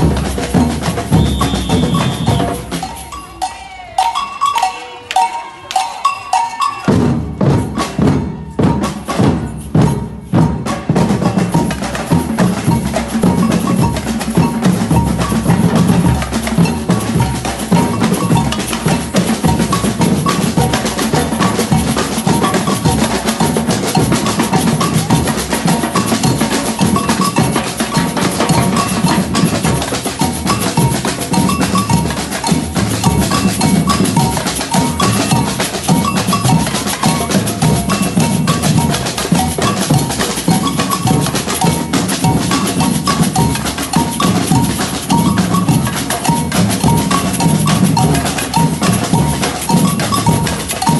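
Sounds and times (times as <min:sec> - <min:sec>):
drum ensemble playing: 0:00.0 - 0:50.9
high knocking tones: 0:11.2 - 0:50.9.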